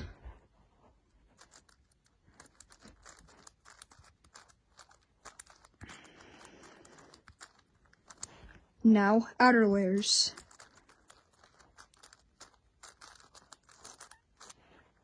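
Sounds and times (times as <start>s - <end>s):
rustling: 0.0s - 15.0s
puzzle cube plastic clicks: 1.4s - 8.6s, 10.3s - 14.6s.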